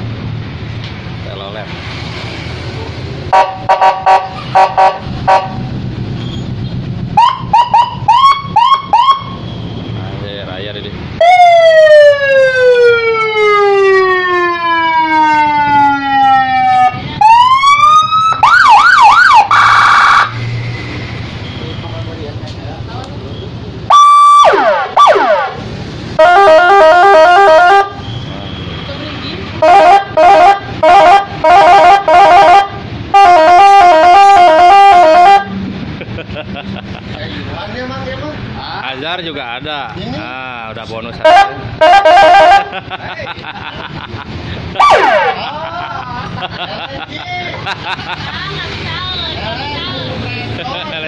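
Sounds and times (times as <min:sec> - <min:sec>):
motorcycle siren wailing and warbling: 0:07.1 - 0:09.5, 0:11.2 - 0:21.7, 0:23.9 - 0:28.4, 0:29.6 - 0:35.6, 0:41.2 - 0:42.7, 0:44.8 - 0:45.4
siren warbling between two pitches: 0:07.2 - 0:09.4, 0:23.9 - 0:25.6.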